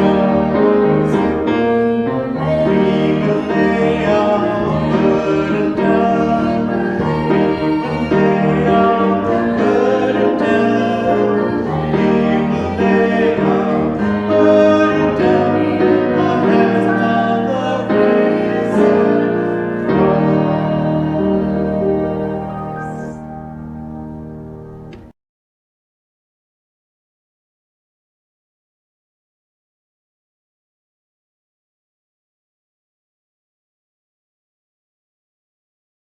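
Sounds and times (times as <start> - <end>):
piano chords: 0.0 - 25.2.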